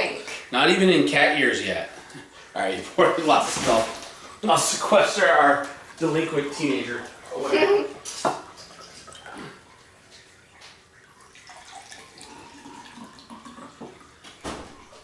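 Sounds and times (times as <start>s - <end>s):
wine pouring into a glass: 10.9s - 14.3s.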